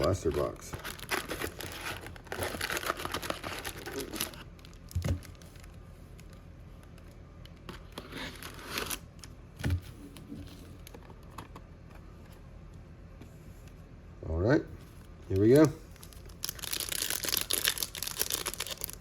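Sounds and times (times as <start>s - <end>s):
plastic foil wrappers crinkling: 0.0s - 6.2s, 8.0s - 9.0s, 15.3s - 19.0s.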